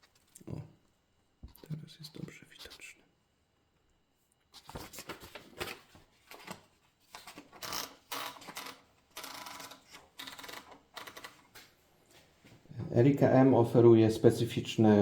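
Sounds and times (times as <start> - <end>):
typewriter clicking and rattling: 7.3 - 11.5
typewriter scraping: 7.6 - 11.4.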